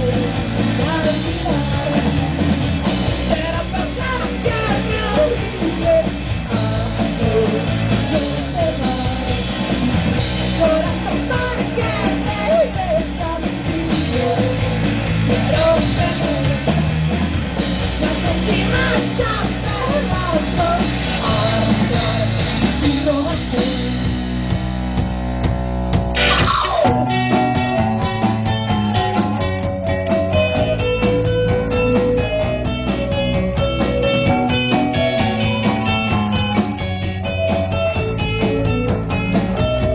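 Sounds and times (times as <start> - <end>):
person singing lead vocal: 0.0 - 17.0, 17.9 - 24.2
bass guitar: 0.0 - 39.9
distorted electric guitar: 0.0 - 39.9
drums: 0.0 - 39.9.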